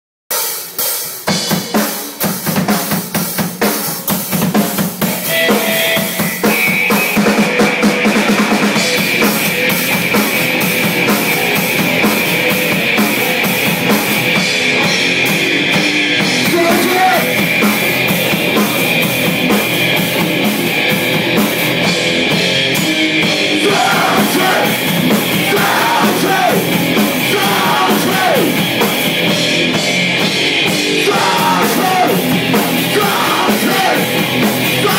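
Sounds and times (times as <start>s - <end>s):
distorted guitars: 0.3s - 34.9s
drum kit: 0.3s - 34.9s
loud band playing: 0.3s - 34.9s
bass guitar: 1.2s - 34.9s.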